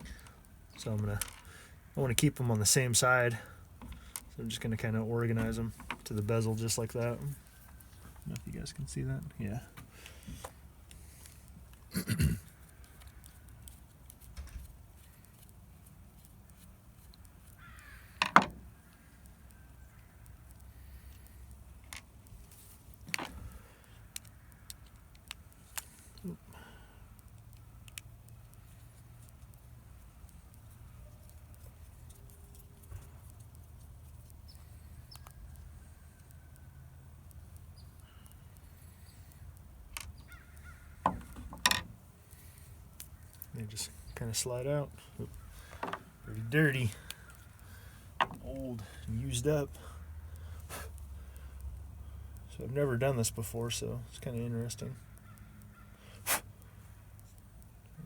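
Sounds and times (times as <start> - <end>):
small clicks: 10.0 - 49.7.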